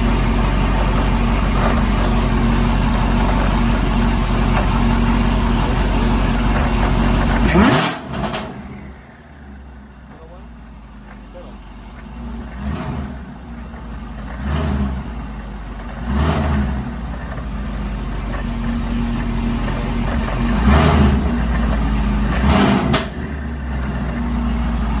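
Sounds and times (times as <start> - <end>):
knocking grinding noise: 0.0 - 8.7
supercharged car engine revving: 0.0 - 9.5, 12.1 - 25.0.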